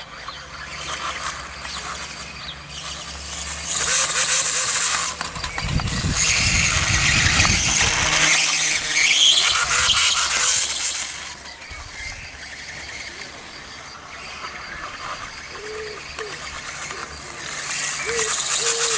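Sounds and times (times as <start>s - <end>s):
toy motor whining: 0.0s - 18.9s
tyres scrabbling on ground: 0.1s - 18.9s.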